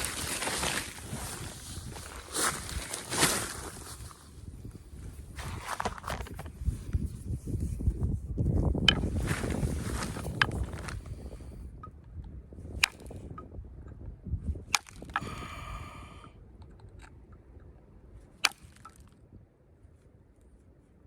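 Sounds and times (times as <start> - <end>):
soft handling rustle: 0.0 - 11.3.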